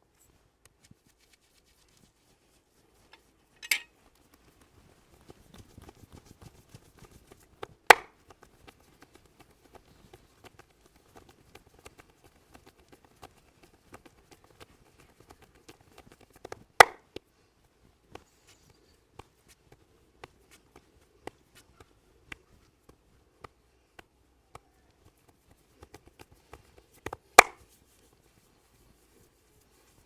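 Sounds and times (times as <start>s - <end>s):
hands tapping on head: 5.8s - 17.2s, 19.2s - 27.8s
sharp hand smacks: 7.9s - 8.2s, 16.2s - 17.0s, 27.0s - 27.6s.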